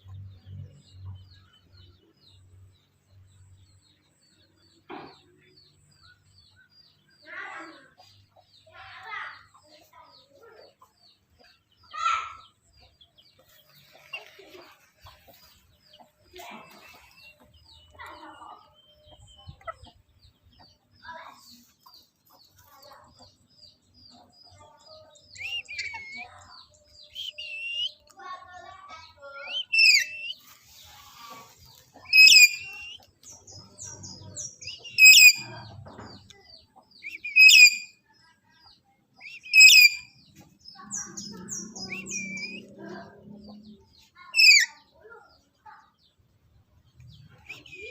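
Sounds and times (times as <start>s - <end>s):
high chirps: 29.5s - 30.6s, 31.9s - 35.5s, 37.0s - 38.0s, 39.3s - 42.8s
parrot chattering calls: 32.0s - 32.9s.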